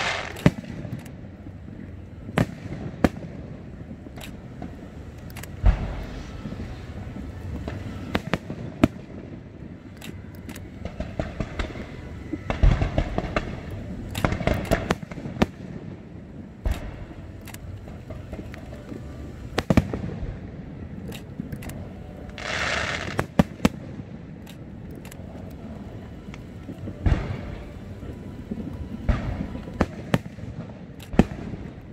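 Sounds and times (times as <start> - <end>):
firework hiss: 0.0 - 1.3, 2.2 - 9.9, 17.8 - 24.8
fireworks bangs: 0.0 - 31.9
fireworks crackling: 0.0 - 31.9.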